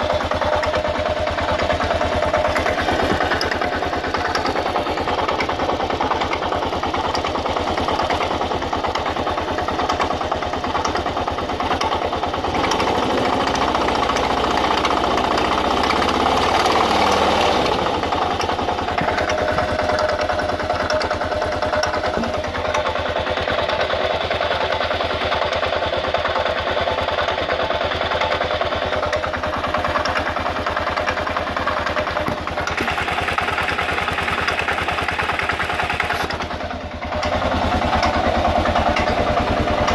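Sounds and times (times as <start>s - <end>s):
clacking grinding clatter: 0.0s - 39.9s
motorcycle engine idling: 0.0s - 39.9s.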